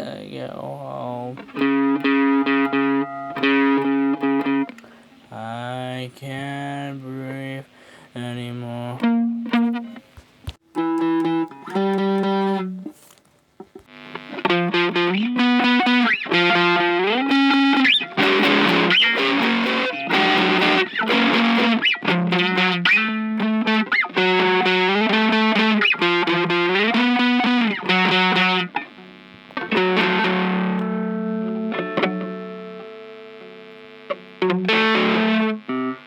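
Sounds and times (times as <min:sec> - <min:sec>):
distorted electric guitar riff: 0:00.0 - 0:36.0.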